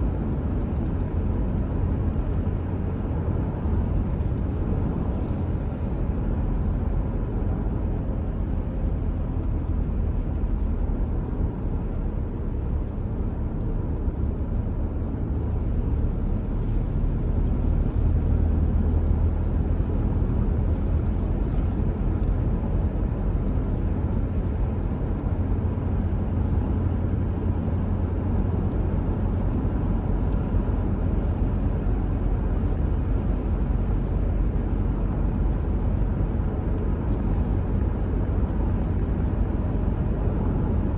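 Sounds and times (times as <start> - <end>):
car driving steadily: 0.0 - 40.9
low rumble of tyres and engine: 0.0 - 40.9.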